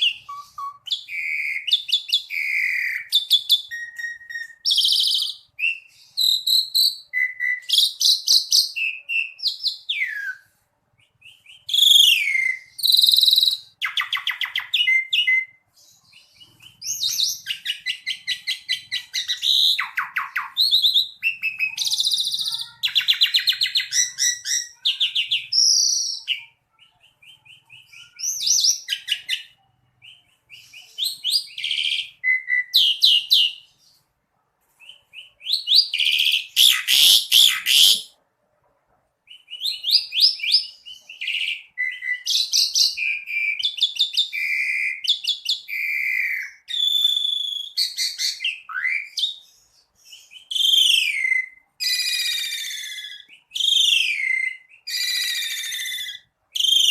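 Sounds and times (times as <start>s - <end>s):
starling singing varied song: 11.0s - 33.9s.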